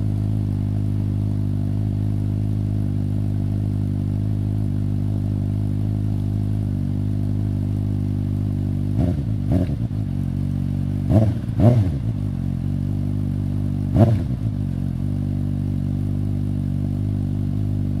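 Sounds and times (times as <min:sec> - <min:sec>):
motorcycle engine idling: 0:00.0 - 0:18.0
engine revving on throttle blips: 0:08.9 - 0:15.2.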